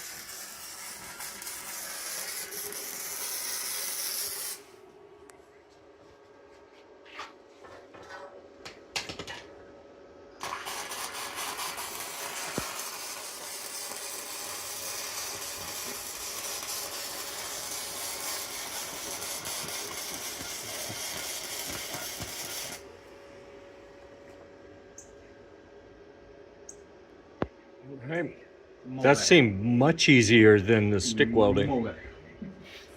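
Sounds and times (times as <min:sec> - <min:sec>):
welding arc crackling: 0:00.0 - 0:04.7, 0:10.4 - 0:22.9
welding arc sputters: 0:00.0 - 0:04.7, 0:10.4 - 0:22.9.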